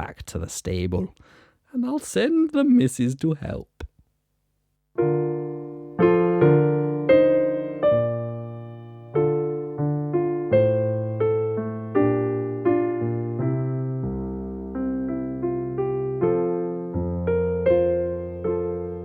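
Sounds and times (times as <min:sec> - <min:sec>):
slow piano chords: 0:05.0 - 0:19.0.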